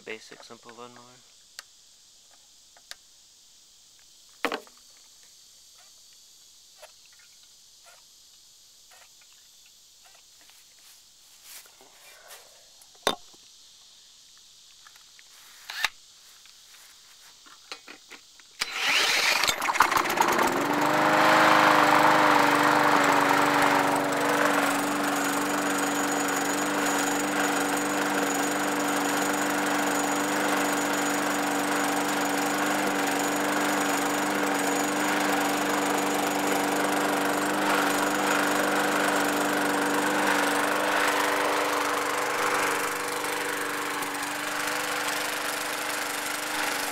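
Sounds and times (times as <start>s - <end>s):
drill spinning: 15.7s - 16.0s, 18.6s - 46.9s
lawnmower engine running: 18.6s - 46.9s.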